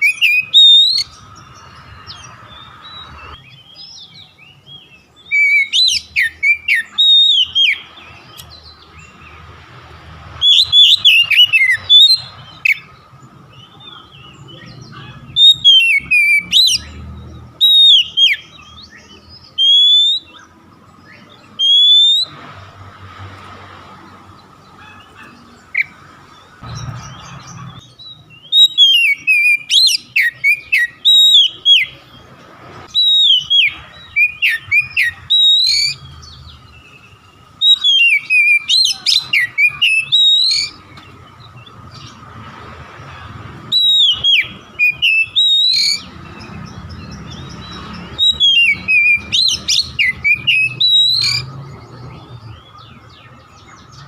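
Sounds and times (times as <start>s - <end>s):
bird singing whistled phrases: 0.0s - 1.2s, 2.6s - 9.2s, 10.4s - 12.9s, 15.3s - 20.5s, 21.1s - 22.4s, 27.9s - 32.0s, 32.9s - 36.1s, 36.8s - 40.9s, 43.7s - 51.5s.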